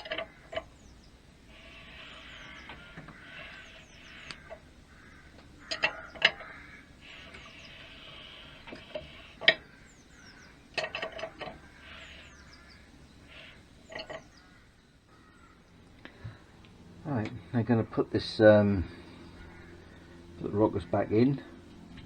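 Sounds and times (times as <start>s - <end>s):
metal tools clinking: 10.8s - 11.6s, 13.8s - 14.3s.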